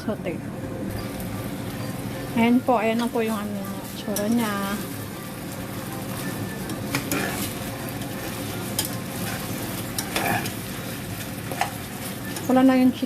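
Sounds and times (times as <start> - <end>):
chicken sizzling in a pan: 0.9 - 13.0
utensil scraping a pan: 6.2 - 12.6.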